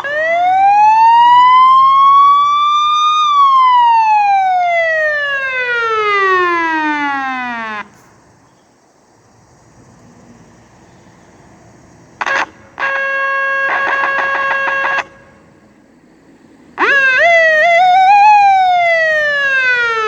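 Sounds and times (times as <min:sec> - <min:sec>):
electronic siren wail: 0:00.0 - 0:08.0, 0:12.2 - 0:15.3, 0:16.8 - 0:20.0.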